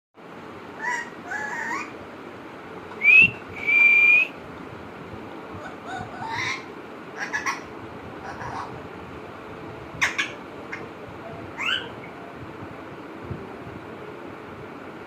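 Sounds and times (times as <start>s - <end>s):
parrot whistle: 3.0s - 4.3s.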